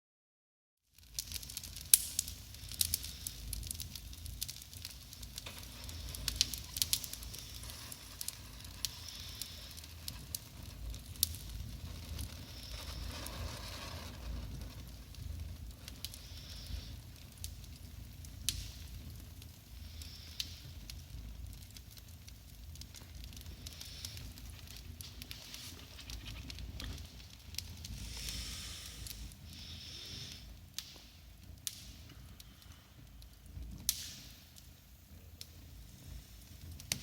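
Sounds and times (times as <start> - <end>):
fire hissing: 0.9 - 37.0
wood fire crackling and popping: 0.9 - 37.0.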